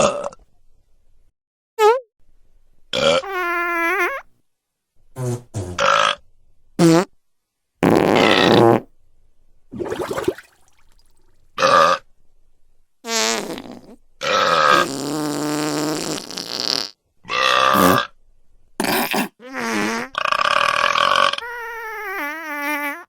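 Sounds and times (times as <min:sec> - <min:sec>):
burp sound effects: 0:00.0 - 0:00.4, 0:02.9 - 0:03.6, 0:13.1 - 0:18.1
fart sound effects: 0:01.8 - 0:02.1, 0:03.0 - 0:04.2, 0:05.2 - 0:06.2, 0:06.8 - 0:07.1, 0:07.8 - 0:08.9, 0:13.1 - 0:17.0, 0:17.6 - 0:18.1, 0:18.8 - 0:23.0.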